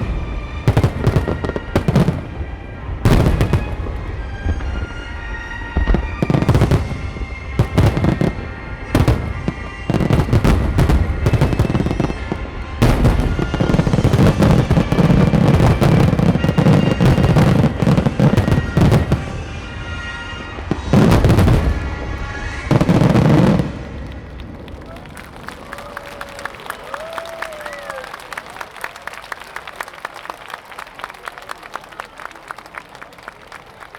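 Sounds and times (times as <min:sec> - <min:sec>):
music: 0:00.0 - 0:24.8
fireworks booming and crackling: 0:00.0 - 0:25.7.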